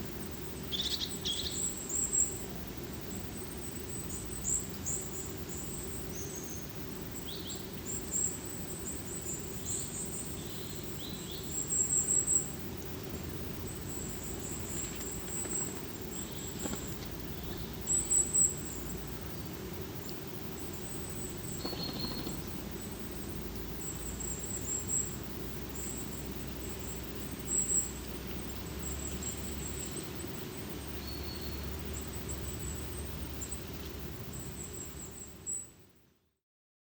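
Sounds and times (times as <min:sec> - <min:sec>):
small birds high thin calls: 0:00.6 - 0:02.4, 0:21.0 - 0:23.0.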